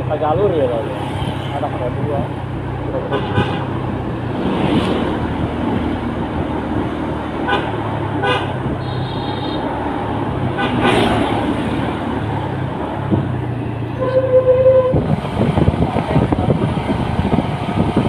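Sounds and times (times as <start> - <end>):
road noise: 0.0 - 18.0
bus horn toots: 3.1 - 3.7, 7.4 - 9.7, 10.6 - 11.1, 13.9 - 15.0.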